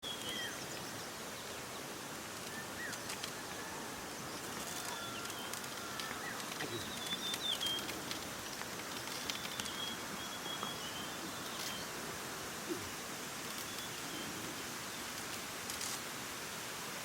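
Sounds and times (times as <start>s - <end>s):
small birds chirping: 0.0s - 12.0s, 12.6s - 15.5s
steady outdoor hiss: 0.0s - 17.0s
faint clicks: 4.5s - 9.9s.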